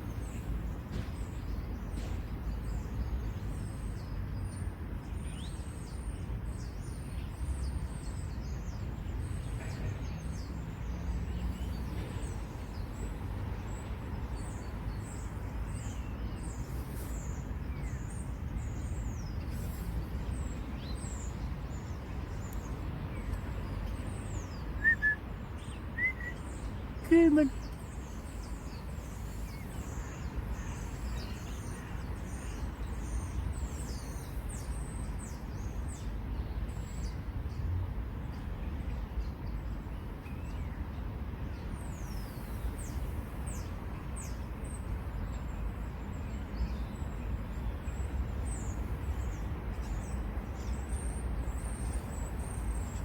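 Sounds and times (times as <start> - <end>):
small birds calling: 24.3 - 35.4.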